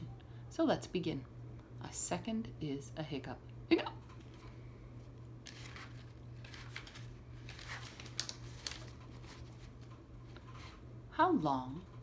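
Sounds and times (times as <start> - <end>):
steady low hum: 0.0 - 12.0
paper rustling of book pages: 5.4 - 10.8.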